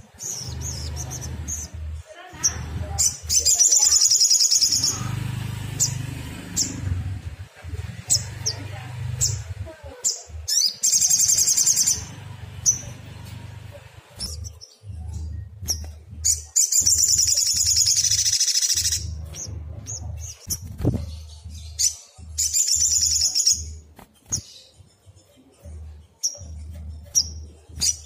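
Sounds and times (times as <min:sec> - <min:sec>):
bird trilling: 0:02.4 - 0:07.0, 0:08.0 - 0:13.0, 0:15.6 - 0:21.0
low hum: 0:11.2 - 0:22.5.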